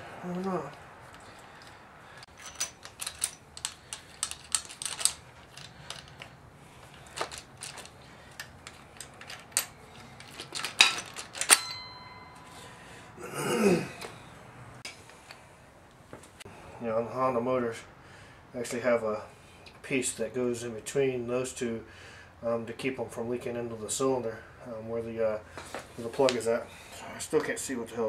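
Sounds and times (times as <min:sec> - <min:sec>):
metal tools clicking and clinking: 0:00.3 - 0:12.7.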